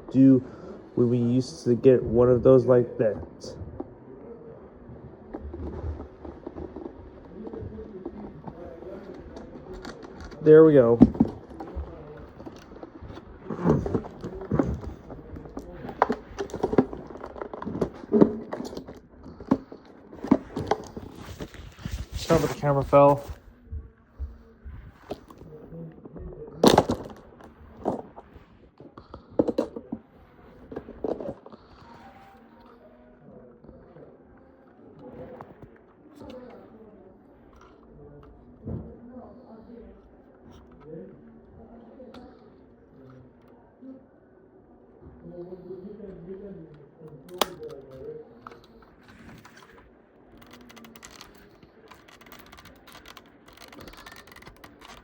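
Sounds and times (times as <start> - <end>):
handling knocks and scrapes: 5.4 - 23.4.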